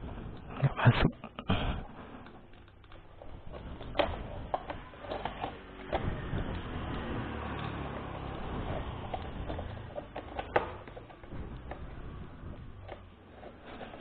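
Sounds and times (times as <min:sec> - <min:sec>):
hands clicking and knocking parts: 0:00.0 - 0:14.0.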